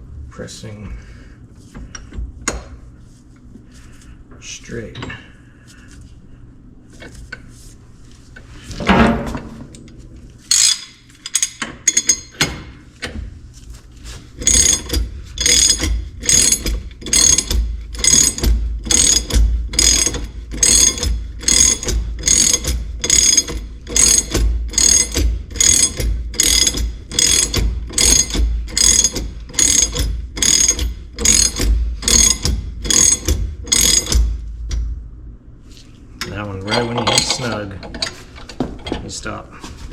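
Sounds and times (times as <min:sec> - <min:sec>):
hand ratchet clicking: 0:10.5 - 0:12.3, 0:14.4 - 0:34.9.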